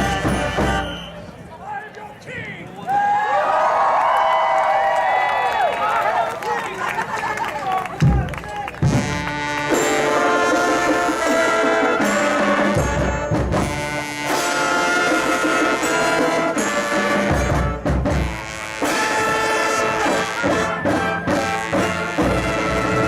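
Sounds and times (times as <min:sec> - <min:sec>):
deep low brass notes: 0:00.0 - 0:01.3, 0:08.3 - 0:23.0
marching band brass chords: 0:00.0 - 0:01.5, 0:08.0 - 0:23.0.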